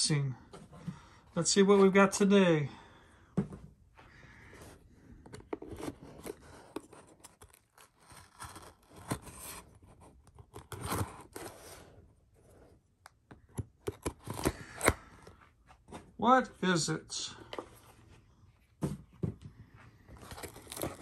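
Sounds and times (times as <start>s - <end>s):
tape and packaging tearing: 7.0s - 9.8s, 20.3s - 21.0s.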